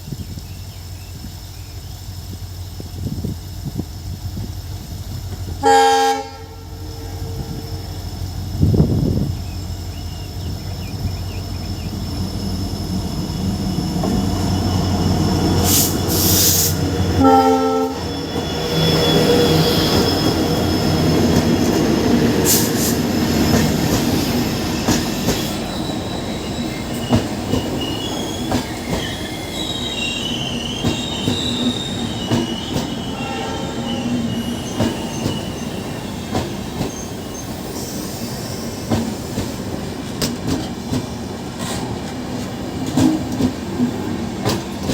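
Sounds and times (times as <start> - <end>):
diesel locomotive engine rumbling: 0.0 - 44.9
train horn blast: 5.6 - 7.6, 15.7 - 20.1, 33.1 - 34.3
high-pitched wheel squeal: 14.0 - 21.1, 24.8 - 39.0.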